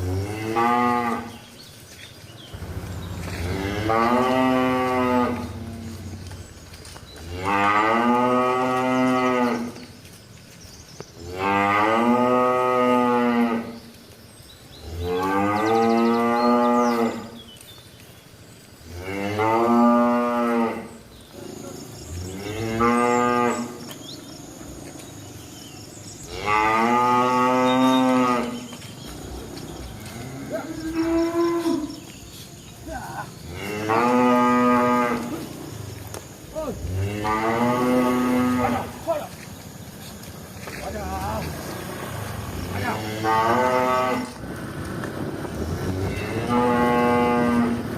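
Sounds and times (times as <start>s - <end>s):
cow mooing: 2.6s - 6.3s, 7.3s - 9.8s, 22.2s - 23.8s, 26.2s - 28.7s, 29.4s - 32.0s, 33.4s - 35.5s, 36.6s - 39.1s, 42.5s - 44.4s, 45.8s - 47.9s.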